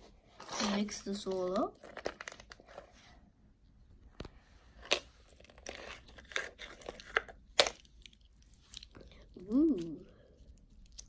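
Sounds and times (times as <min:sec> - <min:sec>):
sticky slime crackles and snaps: 0:04.9 - 0:09.1.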